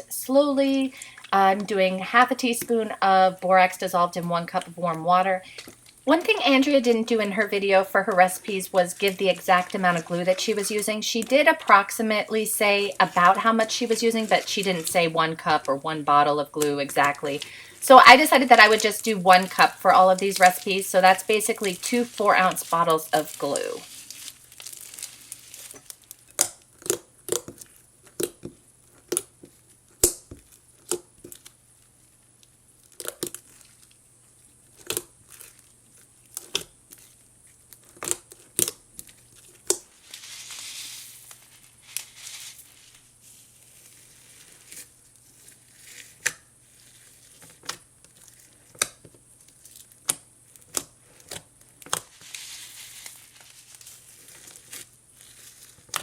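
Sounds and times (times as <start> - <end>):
sticky slime clicks and pops: 26.3 - 29.3.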